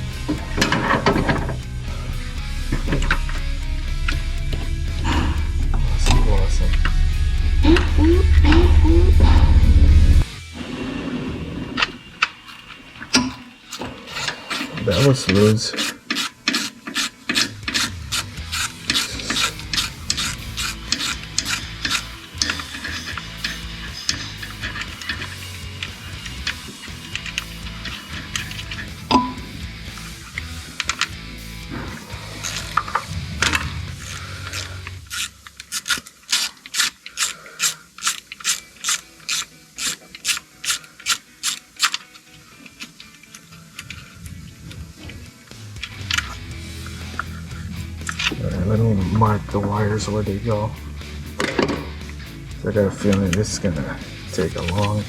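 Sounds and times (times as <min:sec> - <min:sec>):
background music: 0:00.0 - 0:16.0, 0:17.3 - 0:35.3, 0:38.0 - 0:55.0
hand tool rasping on engine: 0:14.2 - 0:29.0
ratchet wrench clicking: 0:15.4 - 0:31.2, 0:32.0 - 0:42.2, 0:45.8 - 0:48.4.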